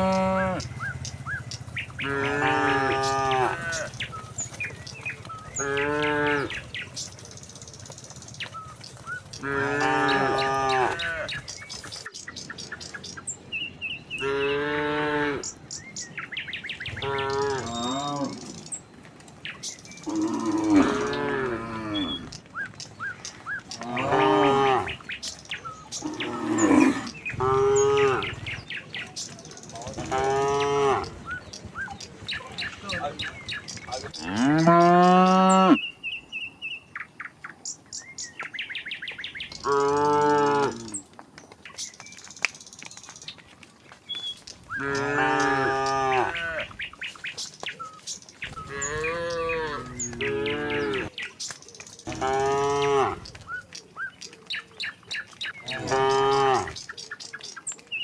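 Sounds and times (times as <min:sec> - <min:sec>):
cattle mooing: 0:00.0 - 0:04.3, 0:05.4 - 0:06.9, 0:09.3 - 0:11.5, 0:14.1 - 0:15.6, 0:16.9 - 0:18.7, 0:20.0 - 0:22.4, 0:23.7 - 0:25.1, 0:25.9 - 0:28.6, 0:29.8 - 0:31.4, 0:34.0 - 0:35.8, 0:39.6 - 0:41.0, 0:44.7 - 0:46.7, 0:48.5 - 0:51.1, 0:52.1 - 0:53.4, 0:55.6 - 0:56.8.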